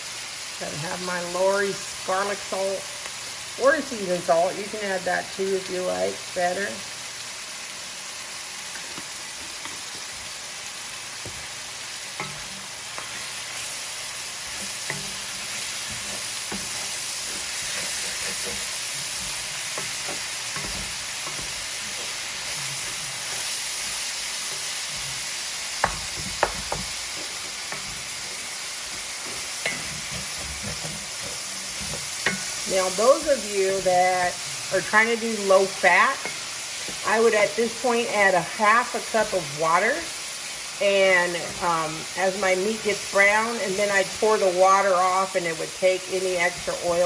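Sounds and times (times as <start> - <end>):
meat and onions sizzling in pan: 0.0 - 47.0
utensil scraping a pan: 12.1 - 35.0.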